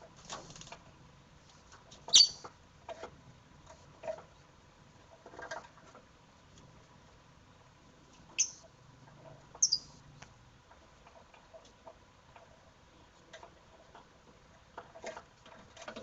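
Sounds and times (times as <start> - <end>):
lovebirds chirping shrilly: 2.1 - 2.4, 8.4 - 8.6, 9.6 - 9.9.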